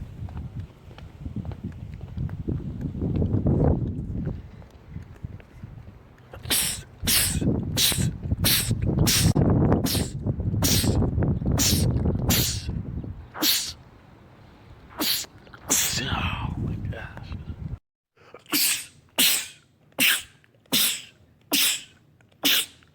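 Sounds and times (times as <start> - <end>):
man sneezing: 6.4 - 11.0, 11.6 - 12.7, 13.4 - 13.8, 15.0 - 16.2, 18.4 - 22.8.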